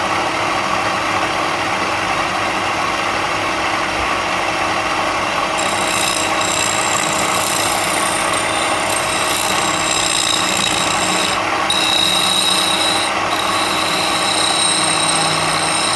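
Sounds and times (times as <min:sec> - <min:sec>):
power tool rasping wood: 0:05.6 - 0:15.9.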